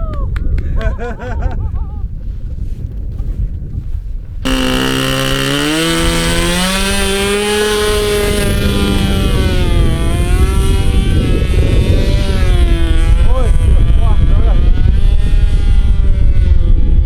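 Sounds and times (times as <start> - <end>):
wind on microphone: 0.0 - 17.0
model airplane motor and propeller: 4.4 - 17.0.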